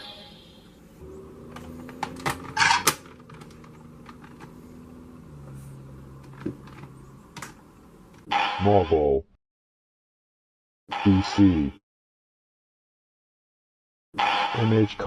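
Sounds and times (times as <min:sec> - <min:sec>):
low electronic hum: 0:00.0 - 0:08.2.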